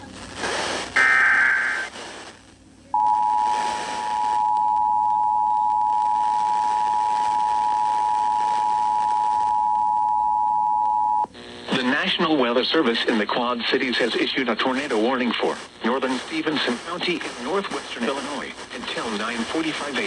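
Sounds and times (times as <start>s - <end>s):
data tone burst: 3.0s - 11.3s.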